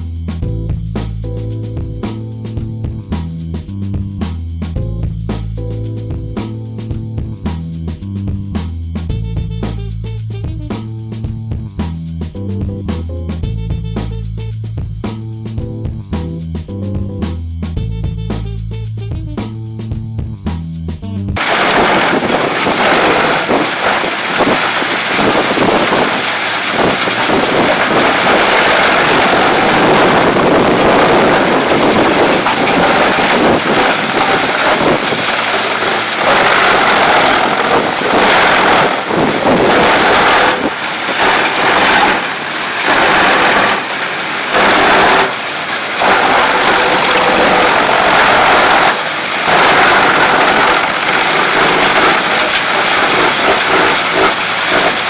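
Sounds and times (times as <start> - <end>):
wood chipper shredding wood: 21.4 - 55.0.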